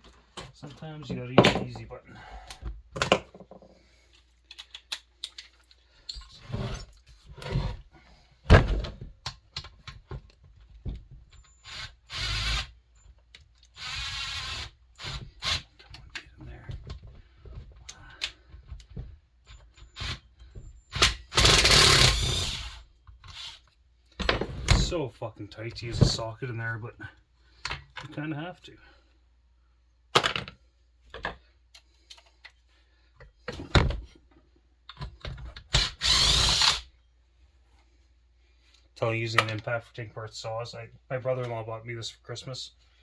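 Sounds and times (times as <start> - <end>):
tools clinking and knocking: 0.3 - 2.0.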